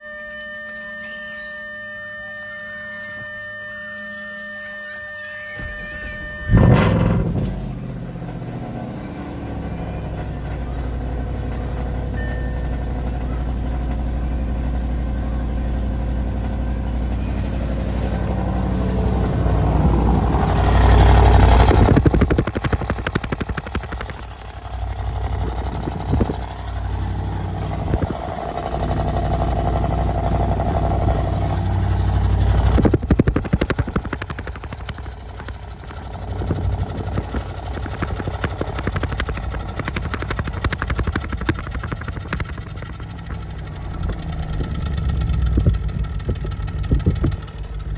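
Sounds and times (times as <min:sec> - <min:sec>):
metallic engine noise: 0:05.5 - 0:47.9
car engine starting and idling: 0:05.6 - 0:47.9.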